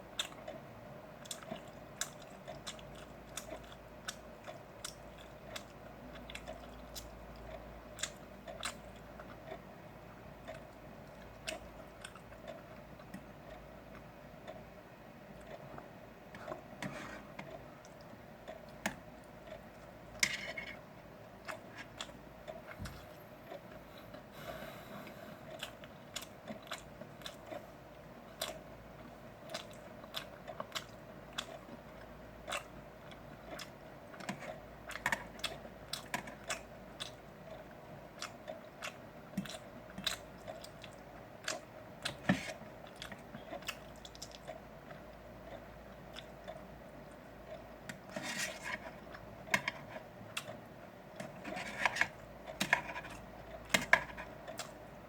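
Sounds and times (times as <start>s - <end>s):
faint steady hum: 0.0s - 55.0s
person chewing: 1.2s - 9.6s, 10.4s - 14.6s, 15.3s - 54.8s.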